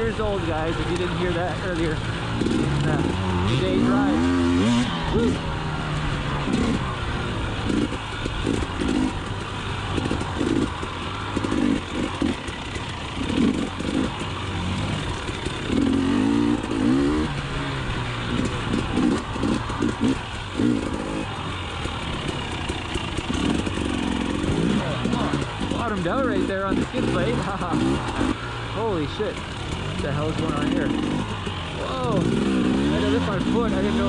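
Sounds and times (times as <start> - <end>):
dirt bike engine revving: 0.0 - 34.0.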